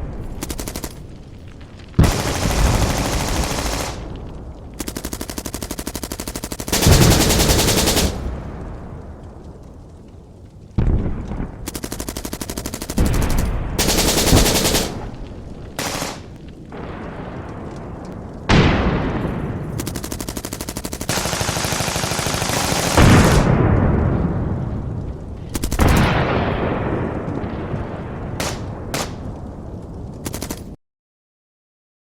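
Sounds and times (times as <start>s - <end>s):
machine-gun fire: 0.4s - 1.1s, 2.0s - 4.2s, 4.8s - 8.5s, 11.6s - 16.4s, 19.7s - 23.8s, 25.5s - 26.6s, 28.4s - 29.3s
echoing gun bangs: 6.0s - 8.5s, 28.4s - 29.3s.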